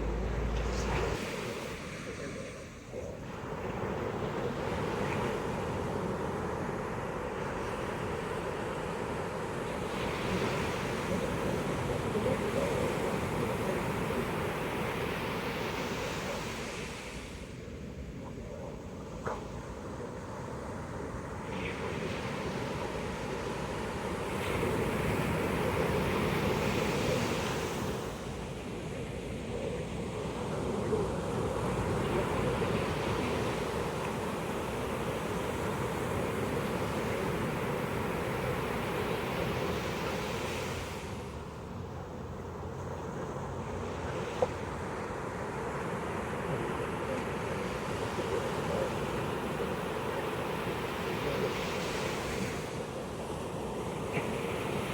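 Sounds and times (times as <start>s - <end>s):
ocean surf breaking: 0.0s - 2.8s.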